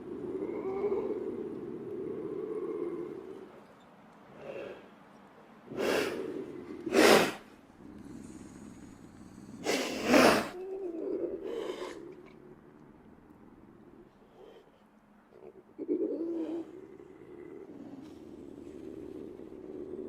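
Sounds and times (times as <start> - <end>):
lynx low wavering growl: 7.7 - 14.8, 15.4 - 20.0.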